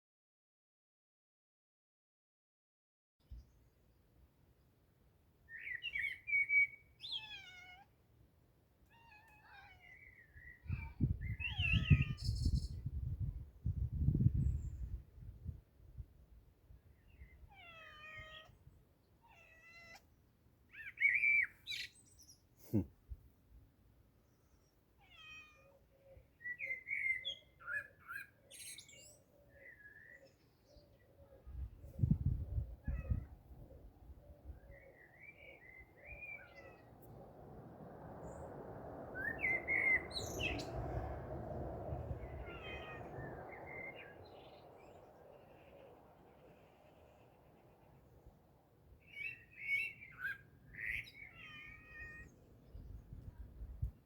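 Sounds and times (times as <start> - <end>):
cat meowing: 7.1 - 7.9, 8.8 - 10.0, 17.5 - 18.6, 19.2 - 20.0, 25.0 - 25.7, 42.3 - 43.2, 51.3 - 52.3
short high bird chirps: 10.0 - 12.8
high animal calls and chirps: 42.1 - 48.0, 49.0 - 52.4.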